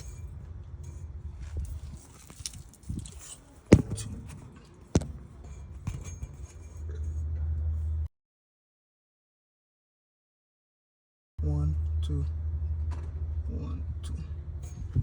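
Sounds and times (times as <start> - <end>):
metallic clanks under a car: 0.0 - 8.1.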